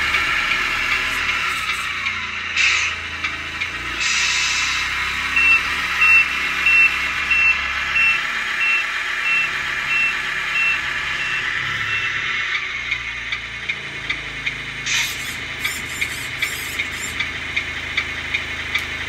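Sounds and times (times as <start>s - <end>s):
truck reversing beeper: 0.0s - 13.5s.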